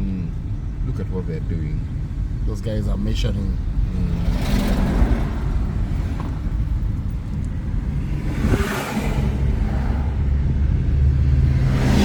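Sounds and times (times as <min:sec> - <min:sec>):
car driving on highway: 0:00.0 - 0:12.0
vehicle swishing past: 0:07.8 - 0:12.0.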